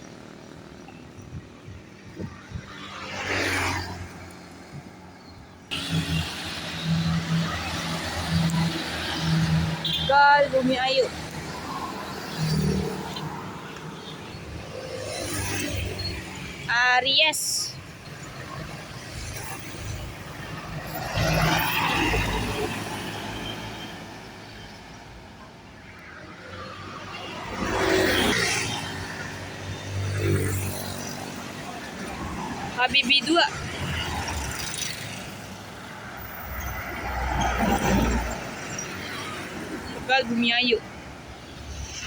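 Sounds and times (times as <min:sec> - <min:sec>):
bus engines running: 0:00.0 - 0:14.7.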